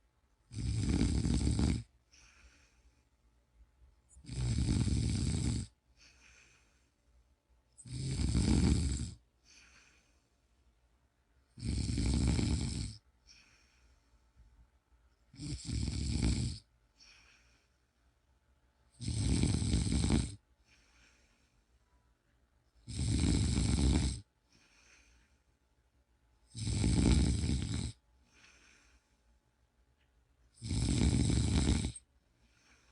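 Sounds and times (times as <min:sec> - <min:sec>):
person snoring: 0:00.5 - 0:02.8, 0:04.1 - 0:06.8, 0:07.8 - 0:10.2, 0:11.6 - 0:13.8, 0:15.3 - 0:17.6, 0:19.0 - 0:21.1, 0:22.8 - 0:25.2, 0:26.5 - 0:29.0, 0:30.5 - 0:32.9
faint breath: 0:02.0 - 0:03.4, 0:05.8 - 0:07.3, 0:09.3 - 0:10.8, 0:13.1 - 0:14.6, 0:16.9 - 0:18.2, 0:20.5 - 0:22.1, 0:24.4 - 0:25.7, 0:28.2 - 0:29.5, 0:32.3 - 0:32.9.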